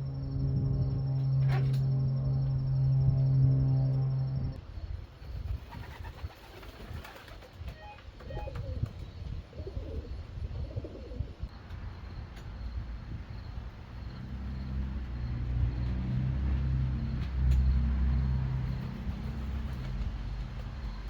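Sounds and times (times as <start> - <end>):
vehicle engine humming: 0.0 - 4.6, 11.5 - 21.0
pigeons cooing: 8.2 - 11.5.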